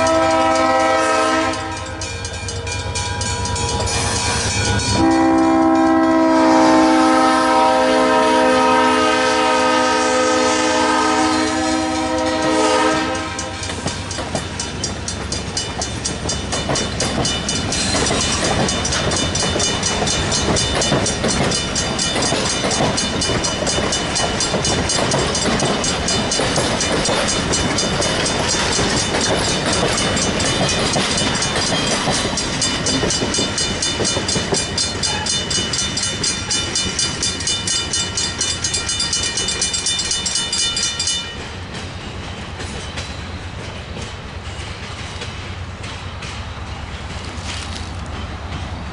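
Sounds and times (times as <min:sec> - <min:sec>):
train horn: 0:00.0 - 0:13.8, 0:35.0 - 0:35.6
train wheels clattering over rails: 0:11.4 - 0:48.9.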